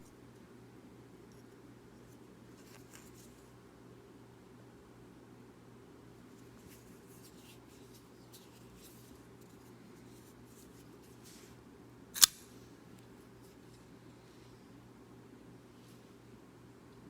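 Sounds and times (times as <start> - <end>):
knife blade snapping into place: 12.2 - 12.4.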